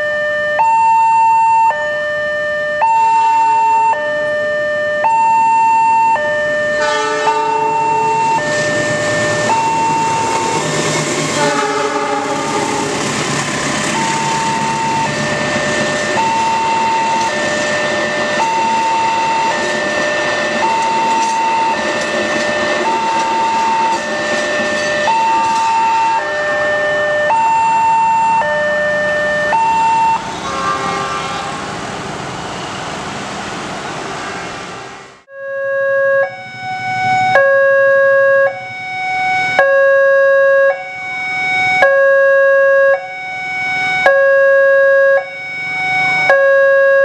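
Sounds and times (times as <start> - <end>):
level crossing two-tone alarm: 0.0 - 10.8, 13.7 - 30.2, 35.3 - 47.0
passing train noise: 5.4 - 35.3, 45.2 - 46.4.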